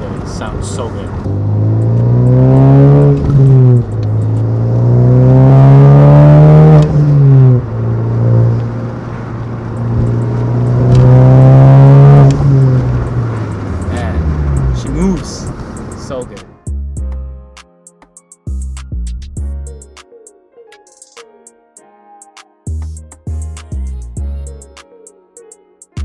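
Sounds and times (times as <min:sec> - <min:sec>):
car engine accelerating through gears: 0:00.0 - 0:16.1.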